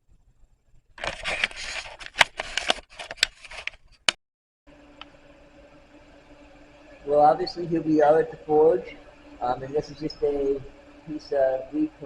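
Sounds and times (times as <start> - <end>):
scraping and rustling: 1.0 - 4.0
faint steady hum: 4.7 - 12.0.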